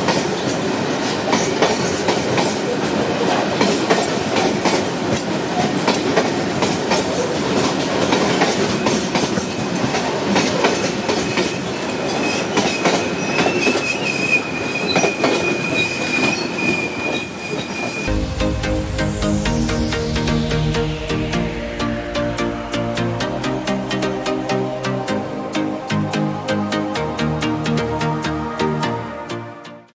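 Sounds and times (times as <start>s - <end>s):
music: 18.1s - 29.9s.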